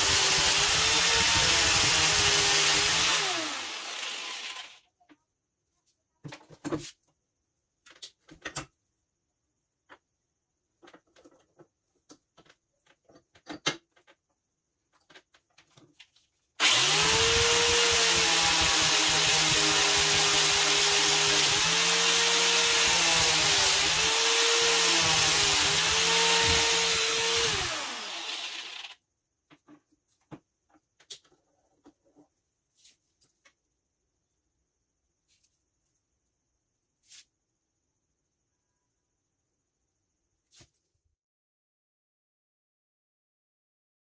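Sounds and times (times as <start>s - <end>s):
electric grinder grinding: 0.0s - 4.8s, 16.6s - 29.0s.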